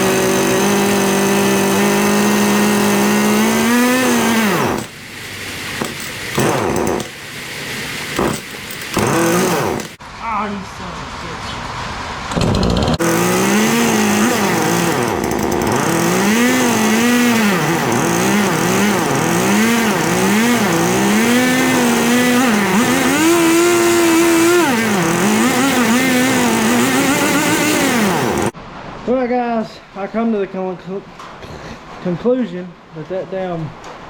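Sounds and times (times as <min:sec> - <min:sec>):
chainsaw engine revving: 0:00.0 - 0:05.0, 0:05.7 - 0:07.3, 0:08.2 - 0:10.0, 0:12.3 - 0:28.6.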